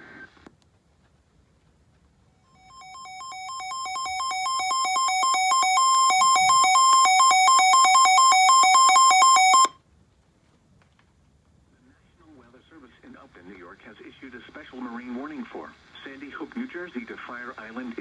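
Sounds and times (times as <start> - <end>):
two-pitch electronic alarm beeps: 2.6 - 9.7.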